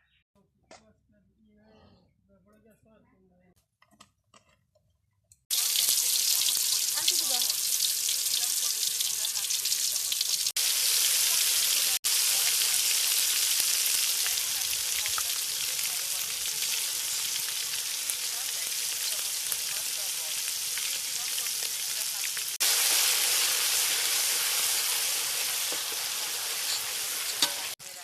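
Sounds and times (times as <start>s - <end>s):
hot oil sizzling in a pan: 5.5s - 28.0s.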